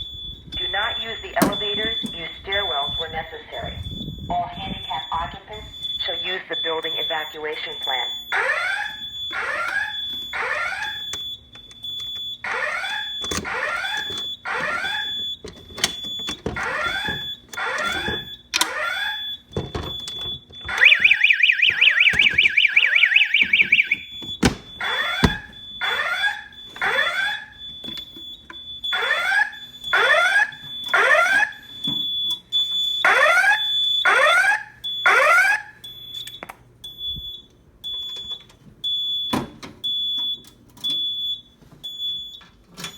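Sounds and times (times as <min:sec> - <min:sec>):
fast warbling alarm tone: 0:00.0 - 0:11.2, 0:16.6 - 0:19.4, 0:20.7 - 0:27.7, 0:28.9 - 0:31.8
steady high-pitched alarm tone: 0:00.0 - 0:15.4, 0:20.6 - 0:36.1
fire alarm falling pitch sweeps: 0:00.0 - 0:42.9.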